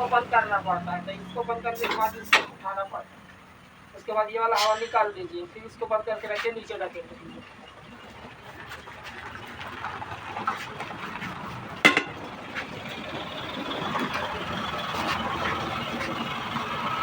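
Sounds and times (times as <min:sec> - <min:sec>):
steady mechanical noise: 0:00.0 - 0:17.0
sharp metallic clank: 0:01.8 - 0:02.6, 0:04.5 - 0:05.3, 0:11.8 - 0:12.2.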